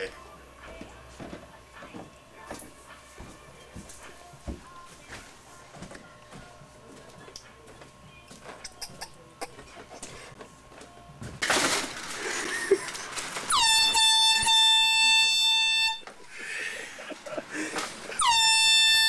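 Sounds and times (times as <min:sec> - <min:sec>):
loud air horn honk: 0:13.5 - 0:16.1, 0:18.2 - 0:19.0.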